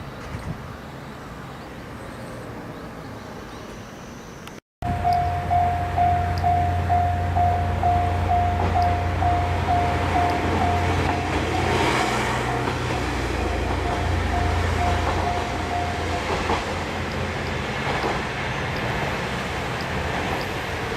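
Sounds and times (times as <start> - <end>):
level crossing bell ringing: 4.8 - 16.3
diesel railcar rumble: 4.8 - 20.9.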